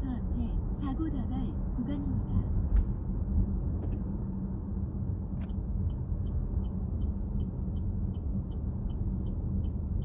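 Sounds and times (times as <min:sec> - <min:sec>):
road and engine rumble in car: 0:00.0 - 0:10.0
turn signal ticking: 0:05.3 - 0:10.0.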